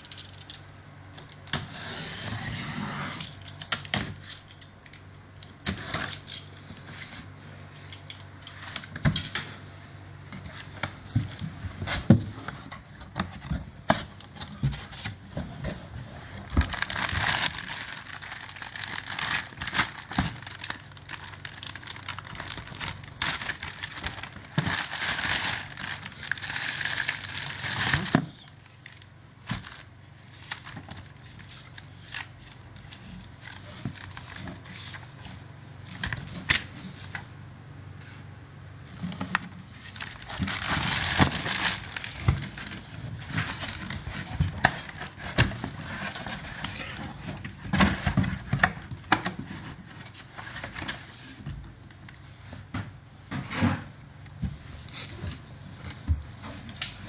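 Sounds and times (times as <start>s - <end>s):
packaging rustling and tearing: 10.5s - 36.7s, 39.0s - 52.3s.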